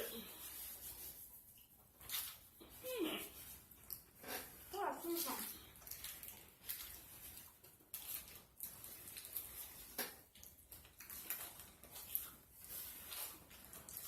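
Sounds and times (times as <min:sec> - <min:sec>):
wet chewing and lip-smacking: 0:03.4 - 0:14.0.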